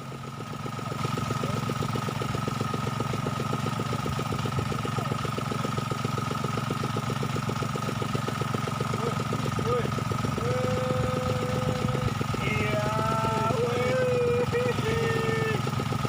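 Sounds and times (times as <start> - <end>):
small engine idling: 0.0 - 16.0.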